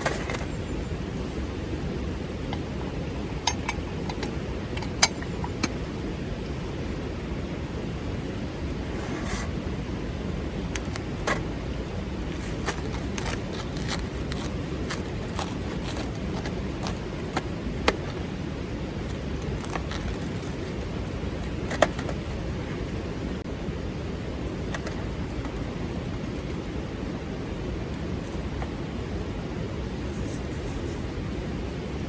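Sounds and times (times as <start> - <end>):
low rushing background: 0.0 - 12.4
campfire crackling: 9.5 - 22.4.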